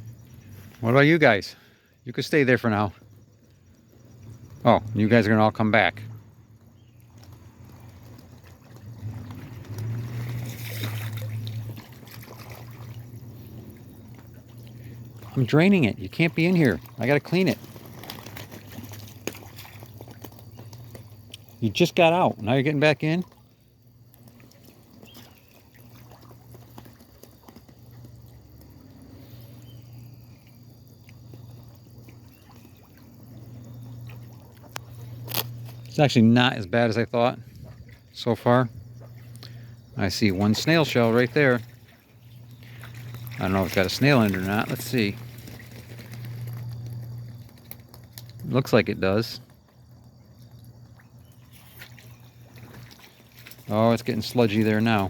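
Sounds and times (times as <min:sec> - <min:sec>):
steady low hum: 0:00.0 - 0:55.0
water pouring through drain: 0:04.6 - 0:55.0
low rushing water: 0:32.9 - 0:47.0.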